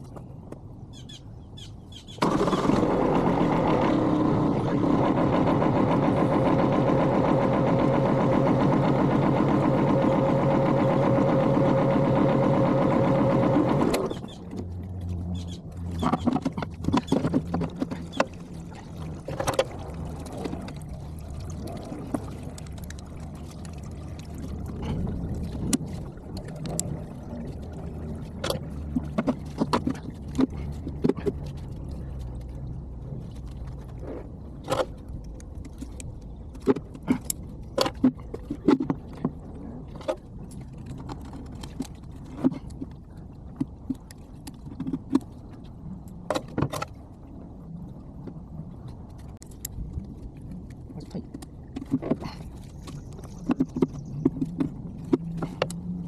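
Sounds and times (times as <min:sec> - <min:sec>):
tractor engine running: 0:02.2 - 0:14.6.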